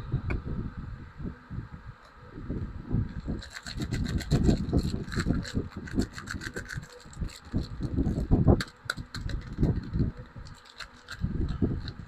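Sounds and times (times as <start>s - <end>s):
packaging rustling: 3.2s - 12.0s.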